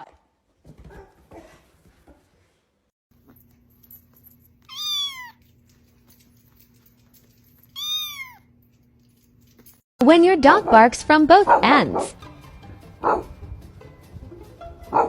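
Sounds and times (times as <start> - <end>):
cat meowing: 4.7 - 5.4, 7.8 - 8.5.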